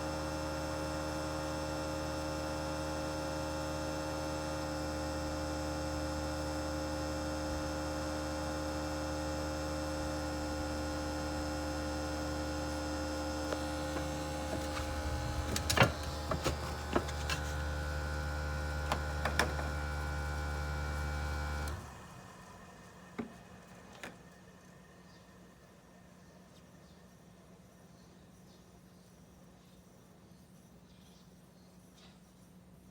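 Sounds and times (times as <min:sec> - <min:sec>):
air conditioner humming: 0:12.4 - 0:27.3
clicks and knocks: 0:13.6 - 0:17.6.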